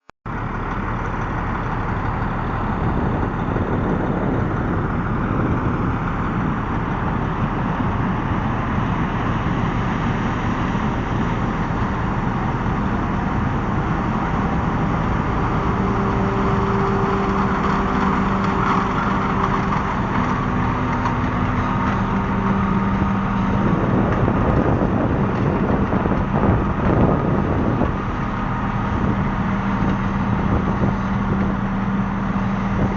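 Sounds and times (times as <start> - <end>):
combine harvester running: 0.3 - 32.9.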